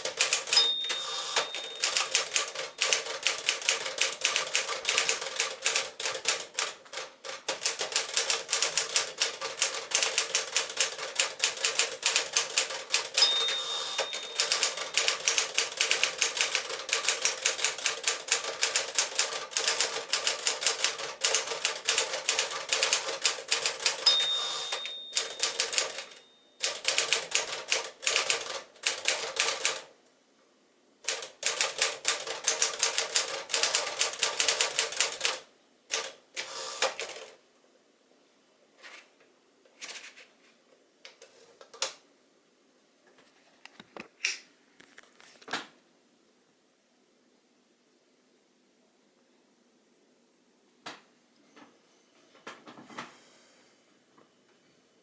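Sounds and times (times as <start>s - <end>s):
typewriter carriage bell: 0.0s - 29.8s, 31.1s - 35.3s
manual typewriter typing: 0.0s - 29.9s, 31.0s - 37.4s.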